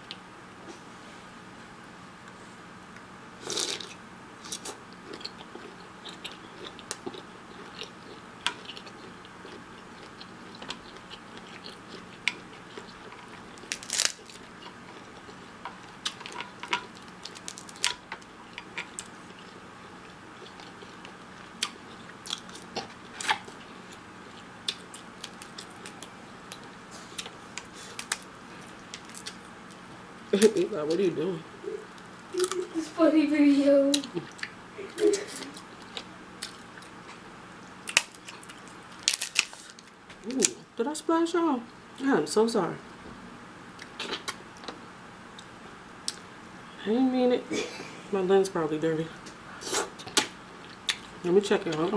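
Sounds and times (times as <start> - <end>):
person biting and chewing: 3.4 - 29.8, 37.8 - 40.4.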